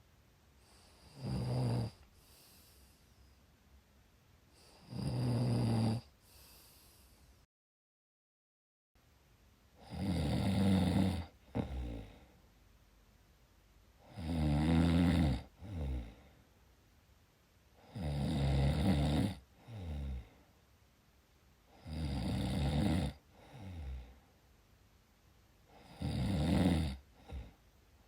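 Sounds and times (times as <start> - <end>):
soft breath sound: 0.5 - 1.2, 1.9 - 3.6, 6.1 - 7.5
loud rattling snores: 1.0 - 2.0, 4.7 - 6.1, 9.8 - 12.2, 14.1 - 16.2, 17.9 - 20.3, 21.8 - 24.1, 25.8 - 27.5.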